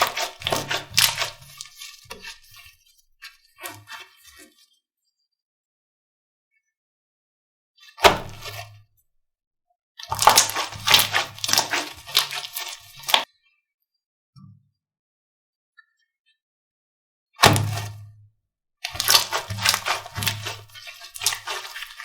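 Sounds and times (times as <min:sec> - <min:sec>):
crunchy slime crackling: 0:00.0 - 0:01.8, 0:10.1 - 0:13.3, 0:18.9 - 0:22.0
slime squish: 0:00.0 - 0:02.8, 0:10.0 - 0:13.3, 0:18.8 - 0:22.0.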